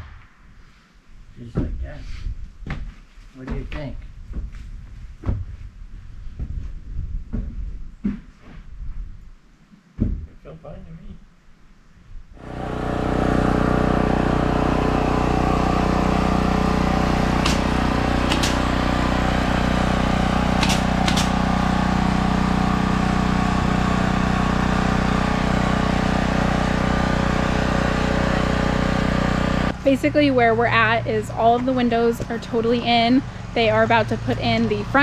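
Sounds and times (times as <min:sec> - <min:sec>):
engine running steadily: 0:12.4 - 0:35.0.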